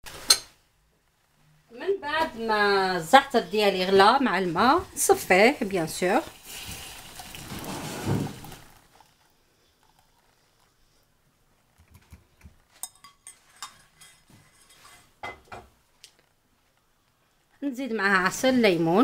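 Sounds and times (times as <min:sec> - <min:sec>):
liquid pouring through strainer: 0:06.2 - 0:10.8.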